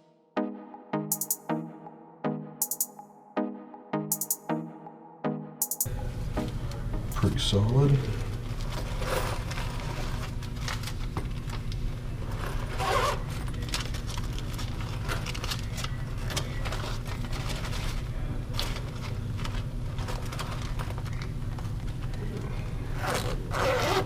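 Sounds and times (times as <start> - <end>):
steady low hum: 5.9 - 9.6.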